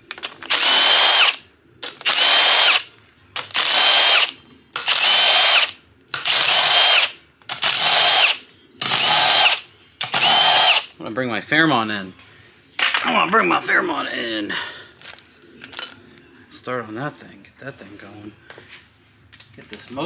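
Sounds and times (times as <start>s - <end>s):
cordless impact wrench: 0.4s - 10.9s.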